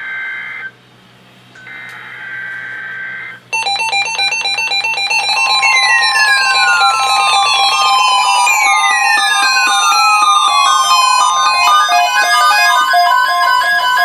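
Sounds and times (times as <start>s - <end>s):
rapid dense alarm beeping: 1.6s - 14.0s
steady alert tone: 3.6s - 14.0s
two-tone data warble: 3.6s - 14.0s.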